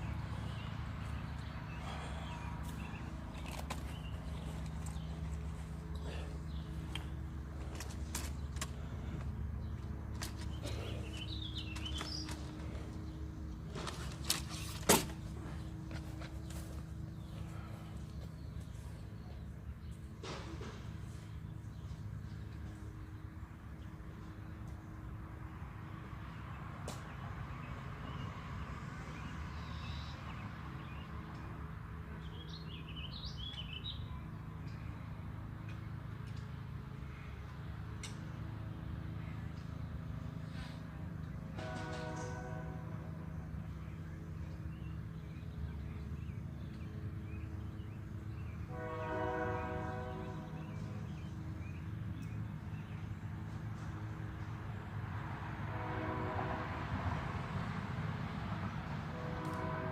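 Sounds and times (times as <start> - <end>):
steady low rumble: 0.0 - 20.2
low outdoor rumble: 0.0 - 59.9
horn long blast: 41.5 - 43.4, 48.6 - 50.7, 55.6 - 57.2, 59.1 - 59.9.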